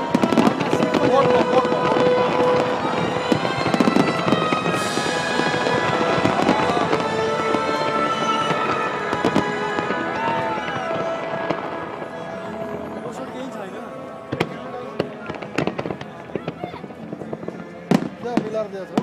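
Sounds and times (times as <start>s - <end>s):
fireworks crackling and popping: 0.0s - 19.0s
music playing: 0.0s - 19.0s.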